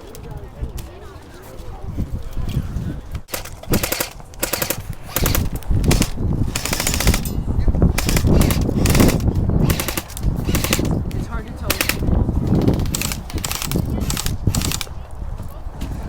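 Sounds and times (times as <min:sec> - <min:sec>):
airsoft guns full-auto fire: 0:03.3 - 0:07.2, 0:08.0 - 0:11.0, 0:11.7 - 0:14.9.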